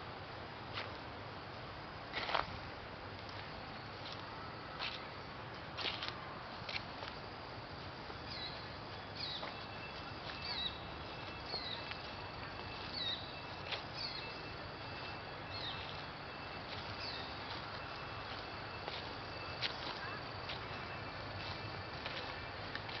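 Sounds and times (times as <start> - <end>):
bird chirping: 8.3 - 18.0.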